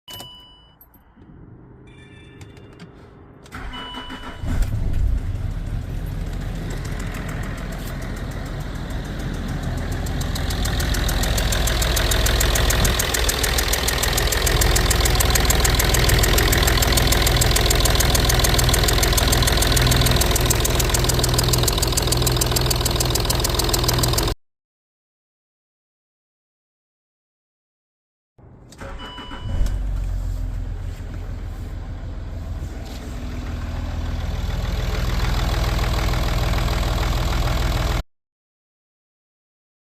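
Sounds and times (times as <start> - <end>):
short electronic beep: 1.9 - 2.9
car engine idling: 3.5 - 24.4, 28.8 - 38.0
starter cranking: 6.2 - 24.4.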